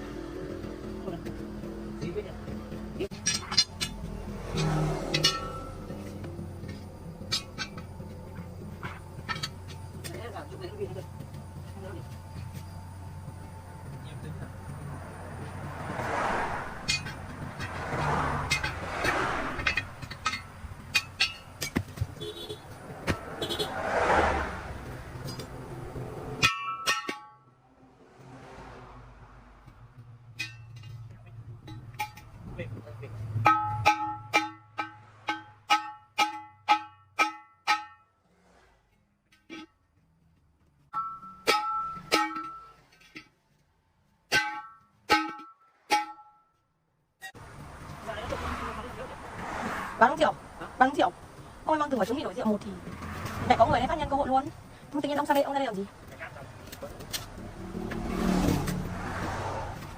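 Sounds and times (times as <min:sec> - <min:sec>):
background noise: 0:00.0 - 0:59.9
metal knocks and clinks: 0:03.1 - 0:10.1, 0:16.8 - 0:22.1
hammer striking metal wheel rim: 0:03.1 - 0:10.2, 0:16.8 - 0:23.3, 0:26.3 - 0:27.5, 0:30.4 - 0:32.4, 0:33.4 - 0:38.1, 0:40.9 - 0:43.4, 0:44.3 - 0:46.4.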